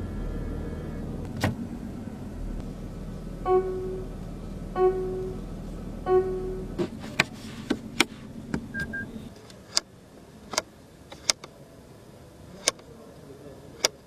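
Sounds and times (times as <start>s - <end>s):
short beep: 3.5s - 4.1s, 4.8s - 5.4s, 6.1s - 6.7s, 8.8s - 9.1s
sharp clicks: 10.5s - 11.6s, 13.8s - 14.0s.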